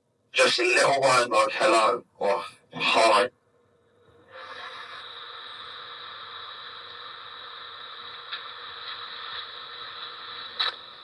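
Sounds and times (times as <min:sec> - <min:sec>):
faint steady hum: 0:00.0 - 0:11.0
electronic static hiss: 0:03.9 - 0:11.0.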